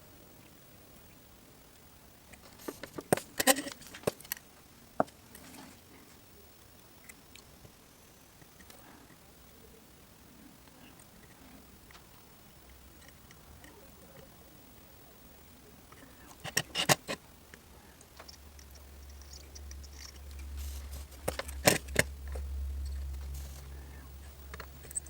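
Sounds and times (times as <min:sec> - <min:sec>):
low hum: 0:17.2 - 0:25.0.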